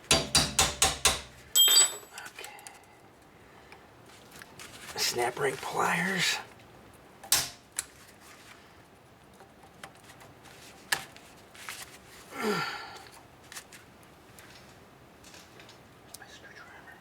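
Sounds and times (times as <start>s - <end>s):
pliers clicking on metal ring: 0.1s - 2.7s.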